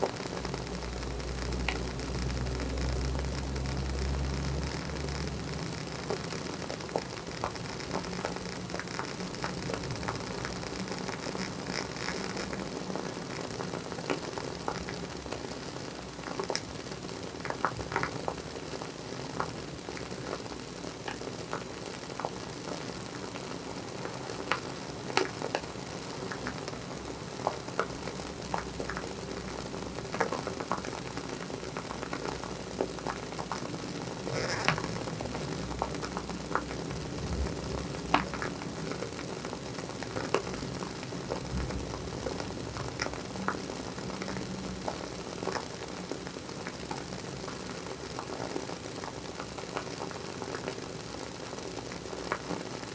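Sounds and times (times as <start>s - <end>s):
candle wick crackling: 0.0s - 15.6s, 31.7s - 47.0s
soft hiss: 0.0s - 52.9s.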